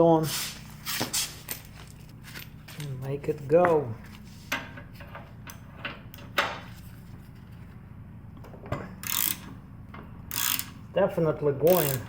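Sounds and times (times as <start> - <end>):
low hum: 0.5 - 11.5
hand tools clicking: 9.0 - 9.5, 10.3 - 10.8, 11.6 - 12.0.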